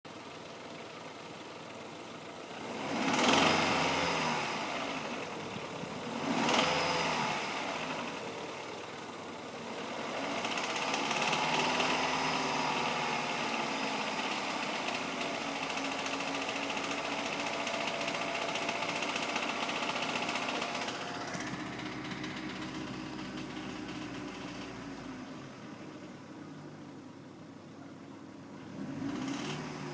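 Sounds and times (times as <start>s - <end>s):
car engine idling and revving: 0.1s - 29.9s.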